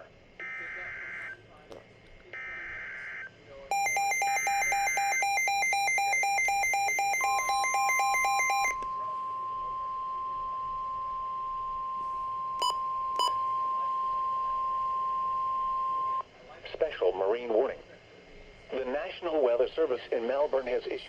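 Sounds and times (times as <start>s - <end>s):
steady warning alarm tone: 2.4s - 16.2s
alternating electronic beeping: 3.7s - 9.5s.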